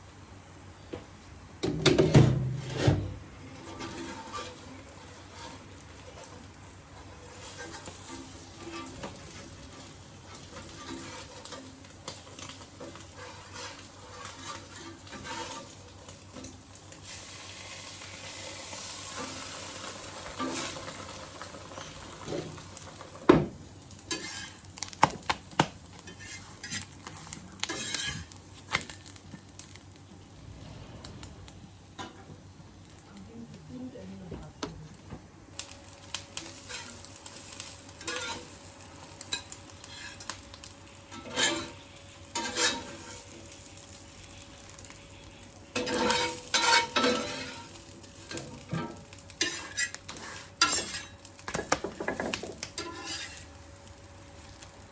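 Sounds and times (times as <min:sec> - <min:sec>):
utensil scraping a pan: 0:01.9 - 0:17.3, 0:18.9 - 0:21.0, 0:24.1 - 0:24.7, 0:26.0 - 0:29.2, 0:36.4 - 0:38.6, 0:39.2 - 0:40.4, 0:41.1 - 0:44.9, 0:45.7 - 0:53.6
food sizzling in a pan: 0:01.9 - 0:34.2, 0:35.4 - 0:54.9.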